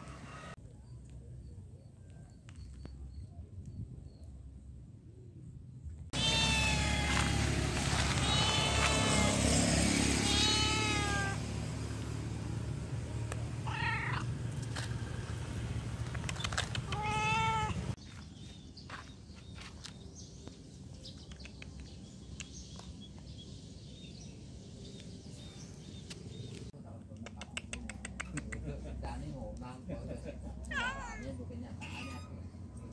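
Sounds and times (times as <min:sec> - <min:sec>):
cat meowing: 0:06.1 - 0:11.4, 0:13.6 - 0:14.3, 0:16.8 - 0:17.8, 0:30.6 - 0:32.4.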